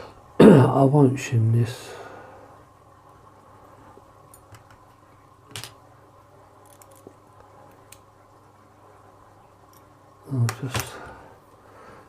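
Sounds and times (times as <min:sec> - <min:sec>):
lock and small tools clicking: 0:06.6 - 0:07.1.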